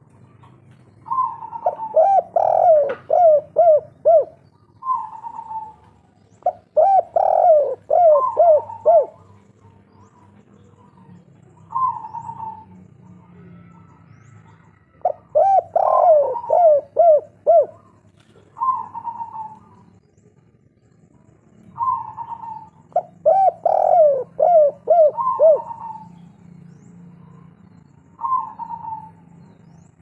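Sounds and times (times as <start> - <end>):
dove cooing: 1.0 - 10.2, 10.8 - 20.0, 21.7 - 26.2, 28.2 - 29.2.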